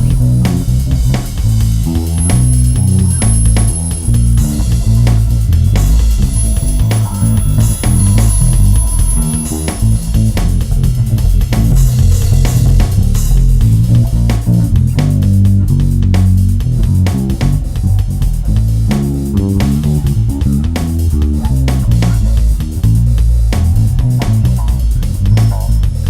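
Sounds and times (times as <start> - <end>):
low plucked string solo: 1.9 - 18.2.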